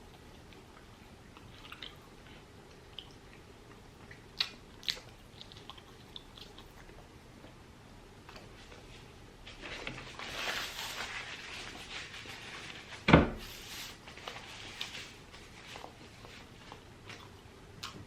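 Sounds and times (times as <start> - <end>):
person chewing food: 0.0 - 7.6, 14.2 - 18.0.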